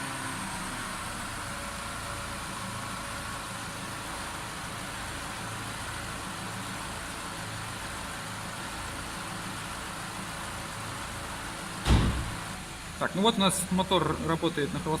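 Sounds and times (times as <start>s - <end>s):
car engine idling: 0.0s - 15.0s.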